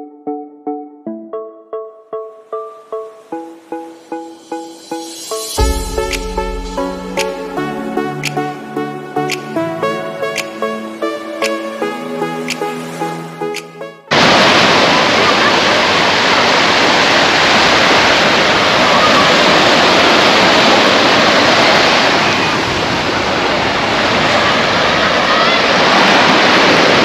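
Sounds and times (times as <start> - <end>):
music: 0.0 - 14.2
surf washing on shore: 12.4 - 27.0.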